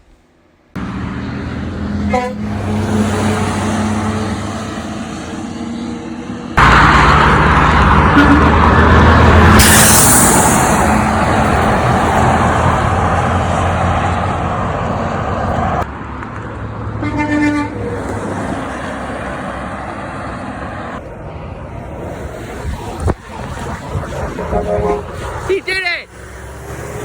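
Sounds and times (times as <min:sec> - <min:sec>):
quiet traffic: 0:00.0 - 0:27.0
heavy truck passing: 0:00.7 - 0:27.0
short horn toot: 0:02.0 - 0:02.5, 0:24.4 - 0:25.2.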